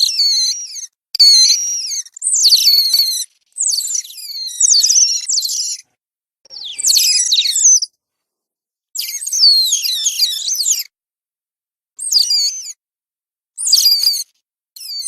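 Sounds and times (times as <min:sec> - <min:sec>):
otter shrill high-pitched calls: 0:00.0 - 0:05.9, 0:06.5 - 0:08.0, 0:09.0 - 0:10.9, 0:12.0 - 0:12.8, 0:13.6 - 0:15.0.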